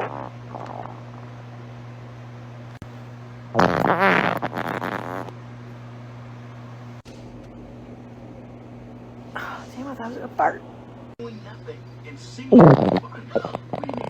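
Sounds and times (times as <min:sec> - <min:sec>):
steady low hum: 0:00.0 - 0:14.0
person farting: 0:03.5 - 0:05.3, 0:12.5 - 0:14.0.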